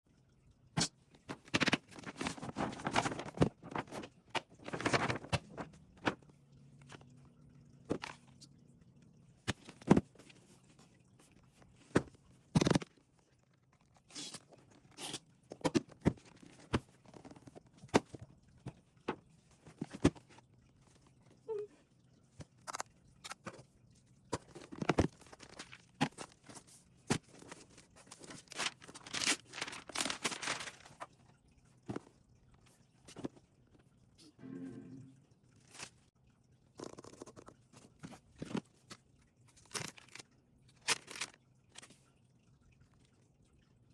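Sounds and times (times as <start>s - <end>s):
rustling and tearing wrap: 1.5s - 6.2s, 27.4s - 31.1s.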